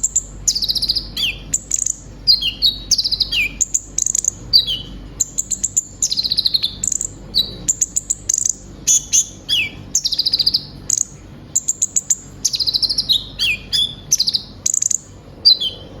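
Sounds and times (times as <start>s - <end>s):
sunbird singing high chirps and trills: 0.0s - 16.0s.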